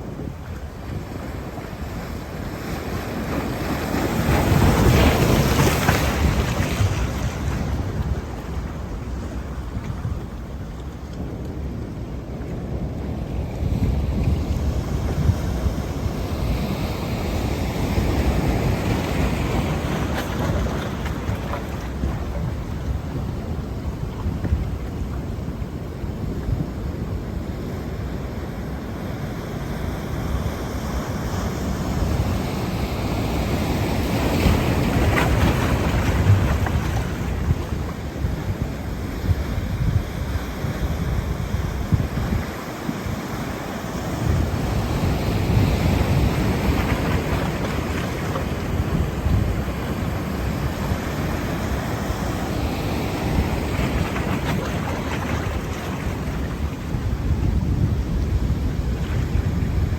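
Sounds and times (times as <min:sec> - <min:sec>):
wind buffeting microphone: 0:00.0 - 0:59.9
surf breaking: 0:01.4 - 0:10.0, 0:33.8 - 0:38.2, 0:42.4 - 0:59.9.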